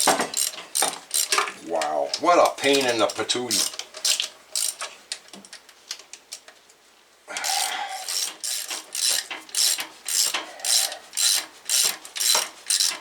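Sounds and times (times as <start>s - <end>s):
ratchet wrench clicking: 0.0s - 1.5s, 3.5s - 4.8s, 7.4s - 13.0s.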